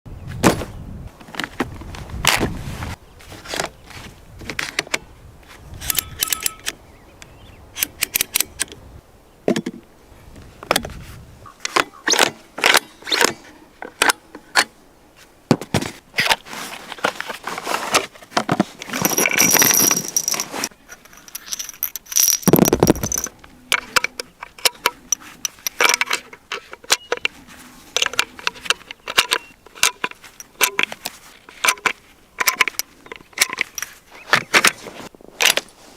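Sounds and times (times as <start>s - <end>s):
rifle bolt clicks and rattles: 5.8s - 6.8s, 7.8s - 8.8s, 11.6s - 14.7s, 17.2s - 27.4s, 28.0s - 35.7s.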